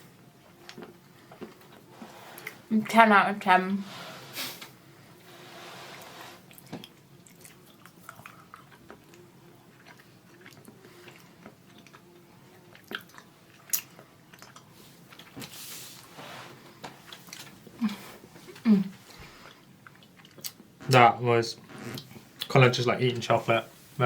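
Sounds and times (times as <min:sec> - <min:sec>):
person chewing: 0:00.4 - 0:02.6, 0:06.5 - 0:15.6, 0:17.0 - 0:20.7.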